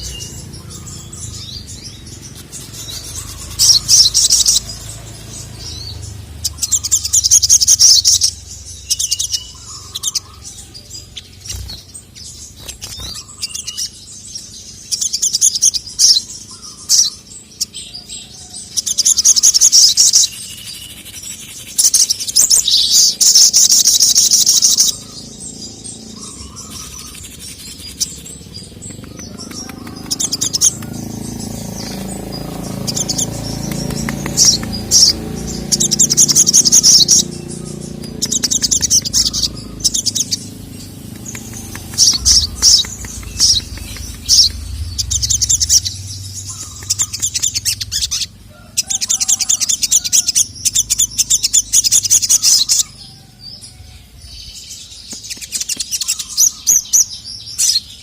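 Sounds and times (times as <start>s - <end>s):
songbird trilling: 0.0s - 58.0s
low rumble: 37.2s - 48.6s.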